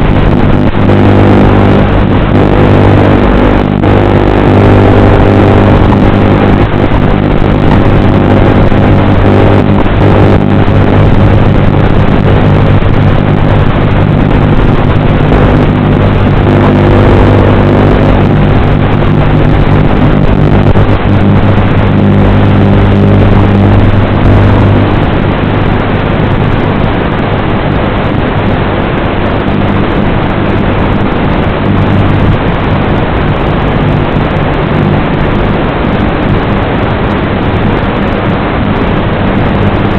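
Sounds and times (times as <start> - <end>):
drone motors buzzing: 0.0 - 26.5.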